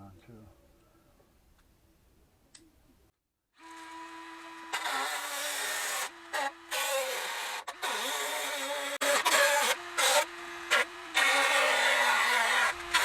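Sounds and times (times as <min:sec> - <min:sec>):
electric fan hum: 0:09.7 - 0:11.9.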